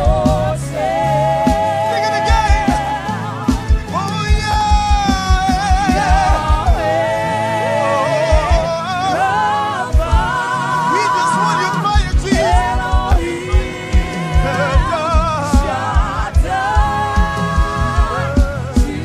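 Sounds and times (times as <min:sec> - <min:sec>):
kick drum beat: 0:00.0 - 0:00.7, 0:01.5 - 0:07.1, 0:08.3 - 0:08.9, 0:09.9 - 0:10.5, 0:12.0 - 0:19.0
person singing with vibrato: 0:00.0 - 0:19.0.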